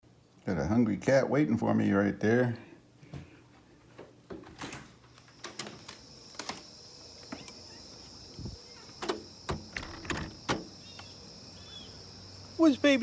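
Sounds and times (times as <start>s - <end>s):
irregular knocks and clicks: 8.9s - 11.1s.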